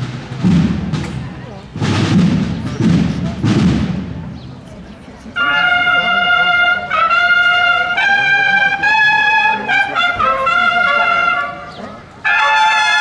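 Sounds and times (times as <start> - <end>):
brass instruments playing slow melody: 5.4 - 13.0.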